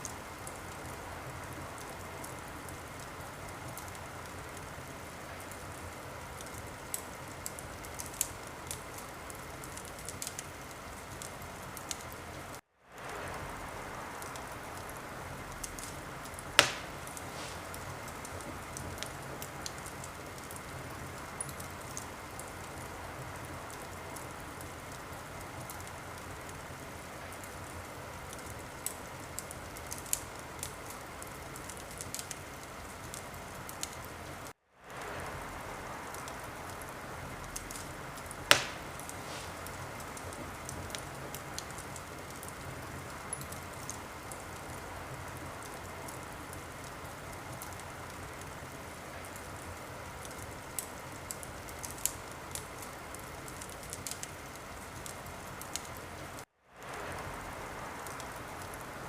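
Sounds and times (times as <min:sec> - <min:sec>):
wood fire crackling: 0:00.0 - 0:59.0
loud pop from fire: 0:16.5 - 0:17.9, 0:38.5 - 0:39.8.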